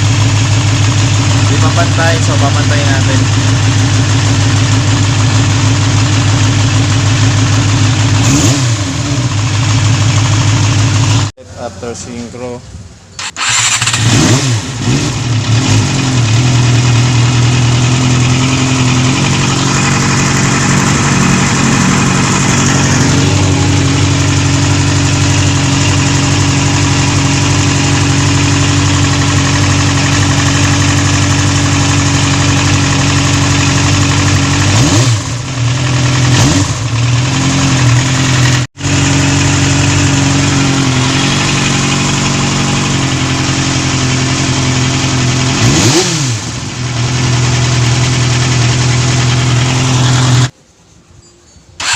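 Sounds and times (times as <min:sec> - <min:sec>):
motorcycle engine idling: 0:00.0 - 0:12.2, 0:14.7 - 0:50.6
engine throttle blips: 0:12.6 - 0:50.5.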